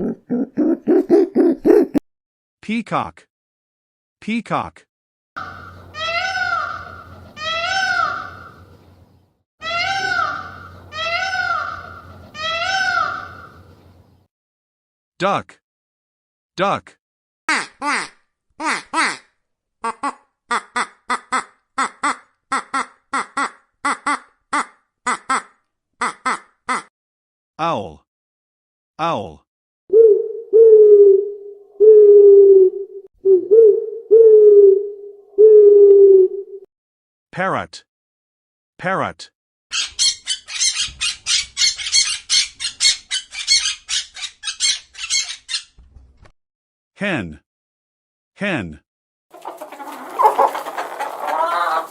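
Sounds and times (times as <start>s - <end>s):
parrot squawking: 5.4s - 8.6s, 9.6s - 13.5s, 39.7s - 45.8s, 49.4s - 51.9s
duck quacking: 19.8s - 26.9s, 49.4s - 51.9s.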